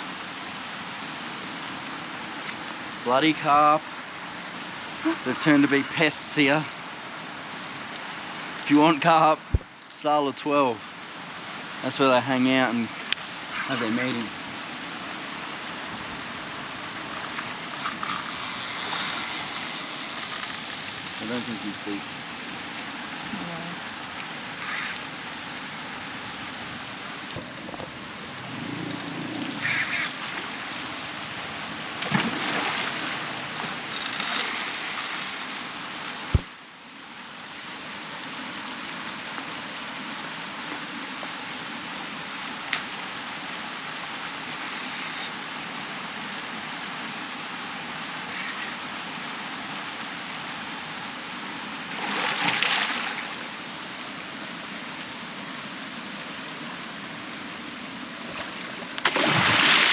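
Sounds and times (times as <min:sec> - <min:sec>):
rushing water: 0:00.0 - 0:59.9
water splashes: 0:11.6 - 0:36.7, 0:51.8 - 0:54.3, 0:58.2 - 0:59.9.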